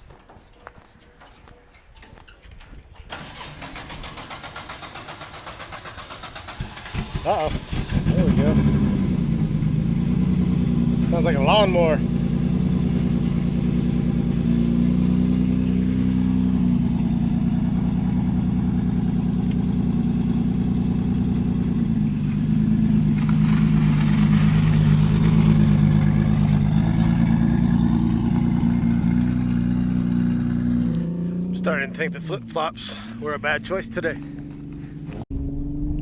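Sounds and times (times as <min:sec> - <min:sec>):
dune buggy engine running: 0:03.2 - 0:36.0.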